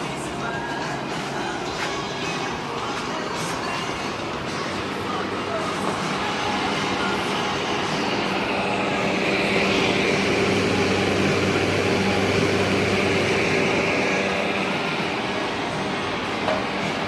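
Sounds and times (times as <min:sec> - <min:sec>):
compressor hum: 0:00.0 - 0:17.0
fan air rushing: 0:00.0 - 0:17.0.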